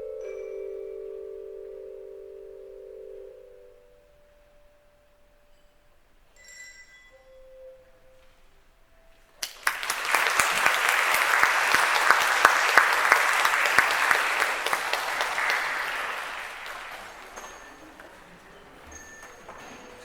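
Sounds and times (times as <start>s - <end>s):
audience applause: 9.4s - 20.0s
bells and chimes held note: 10.0s - 20.0s.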